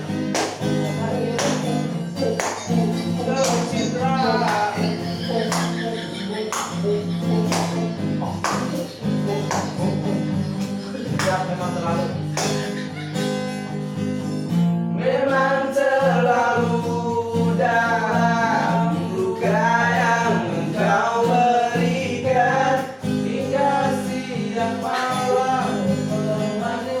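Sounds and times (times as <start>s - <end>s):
person singing: 0.0s - 13.7s, 15.0s - 27.0s
acoustic guitar strumming: 0.0s - 27.0s.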